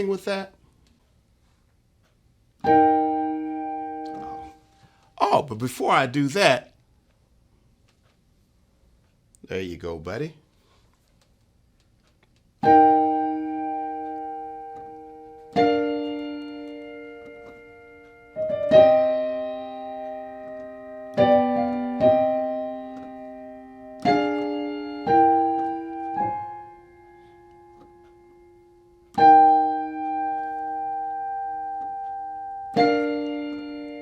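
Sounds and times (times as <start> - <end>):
piano playing slow chords: 2.6 - 4.8, 12.6 - 34.0.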